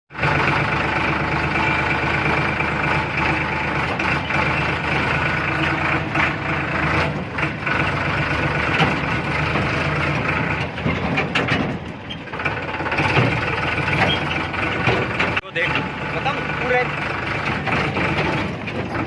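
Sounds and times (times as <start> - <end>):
engine running: 0.1 - 19.0.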